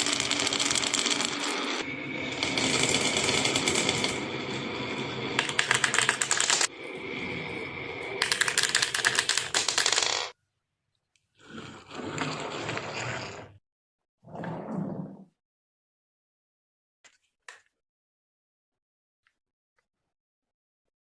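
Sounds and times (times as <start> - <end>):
marbles rolling down wooden run: 0.0 - 6.7, 8.2 - 10.3.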